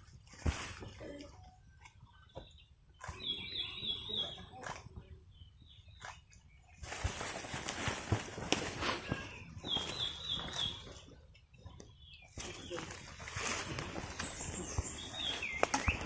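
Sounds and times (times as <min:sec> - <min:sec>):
shuffling rustling noise: 0:00.2 - 0:01.2, 0:06.8 - 0:11.0, 0:12.4 - 0:16.0
small bird chirping: 0:02.0 - 0:07.8, 0:09.0 - 0:16.0.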